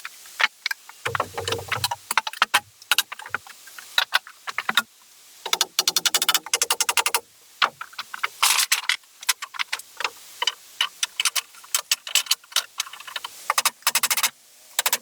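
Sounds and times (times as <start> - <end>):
sharp clicks and knocks: 1.1 - 3.4.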